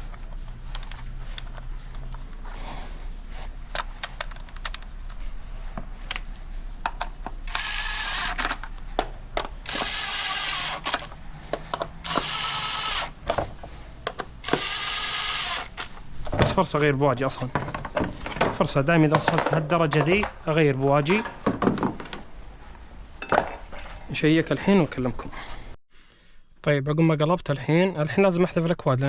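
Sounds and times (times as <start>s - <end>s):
power tool driving bolts: 7.4s - 8.7s, 9.4s - 13.4s, 14.1s - 16.0s.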